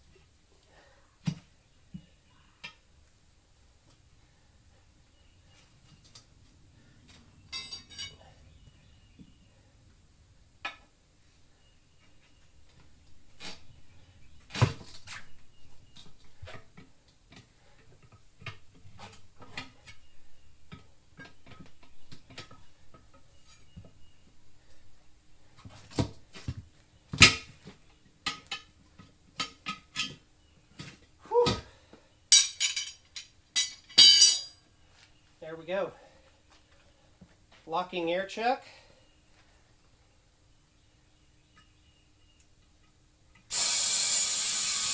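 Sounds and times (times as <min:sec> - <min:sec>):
hand tools clinking on metal rim: 0:32.3 - 0:34.6.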